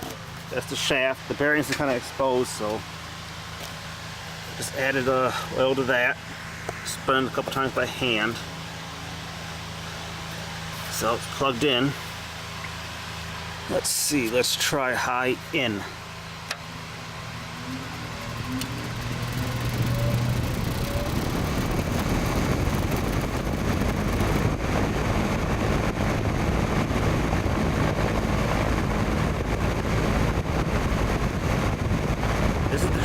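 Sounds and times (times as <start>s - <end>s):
electric fan motor whining: 0.0s - 33.0s
rush of moving air: 17.3s - 32.8s.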